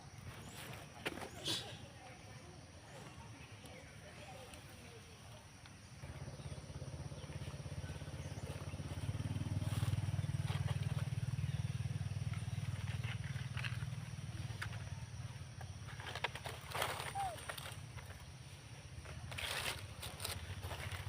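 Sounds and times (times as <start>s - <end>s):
small motorcycle engine running: 5.8s - 21.0s.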